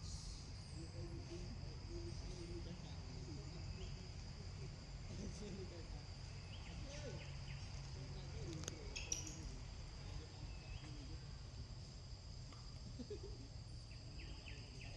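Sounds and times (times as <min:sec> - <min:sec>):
faint chirps: 0:00.0 - 0:11.7, 0:12.6 - 0:14.9
high insect drone: 0:00.0 - 0:14.9.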